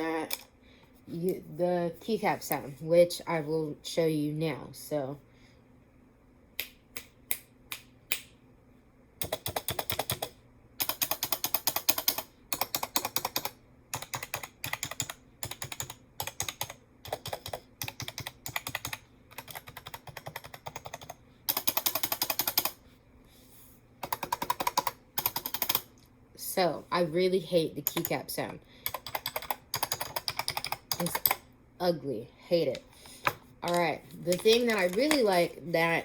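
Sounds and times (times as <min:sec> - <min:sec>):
mechanical keyboard keys clacking: 0:09.2 - 0:22.7, 0:28.9 - 0:31.4.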